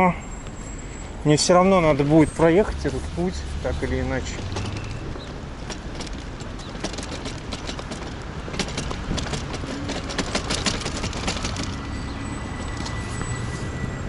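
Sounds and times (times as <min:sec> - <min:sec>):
wind buffeting microphone: 0:01.9 - 0:12.2.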